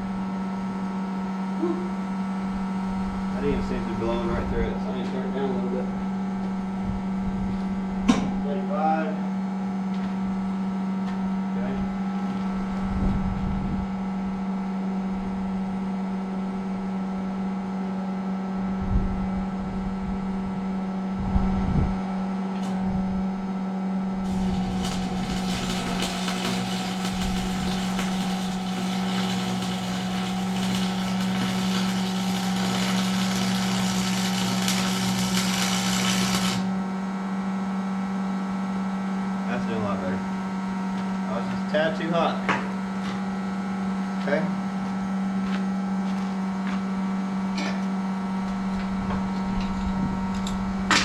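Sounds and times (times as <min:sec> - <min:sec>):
welder humming: 0:24.0 - 0:37.0
welding arc crackling: 0:24.2 - 0:36.8.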